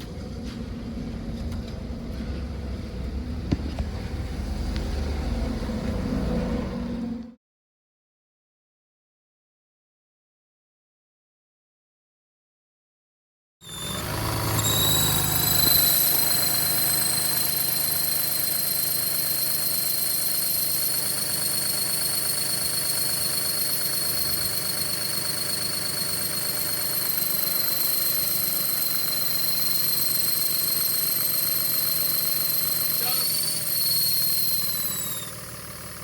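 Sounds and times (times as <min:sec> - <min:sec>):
high-pitched squeal: 0:13.6 - 0:36.0
car engine idling: 0:27.2 - 0:36.0.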